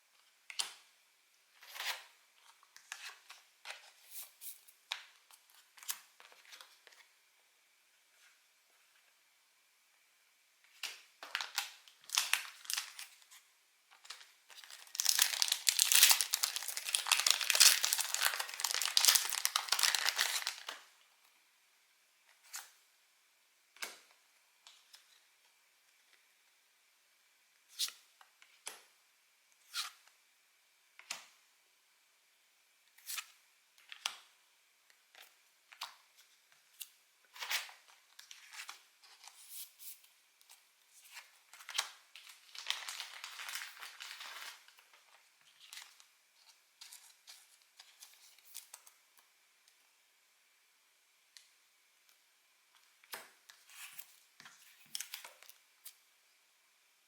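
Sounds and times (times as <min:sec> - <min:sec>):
foil wrapper crinkling and tearing: 0:11.3 - 0:13.1, 0:14.1 - 0:20.8, 0:41.6 - 0:44.8.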